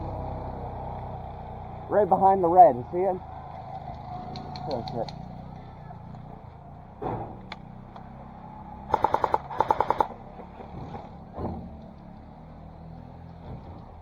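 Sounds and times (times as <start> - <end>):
airsoft rifle bursts: 8.9 - 10.2.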